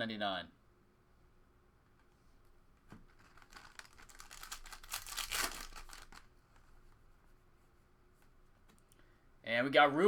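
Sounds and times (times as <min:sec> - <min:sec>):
plastic wrapper crinkling: 0:03.1 - 0:06.7.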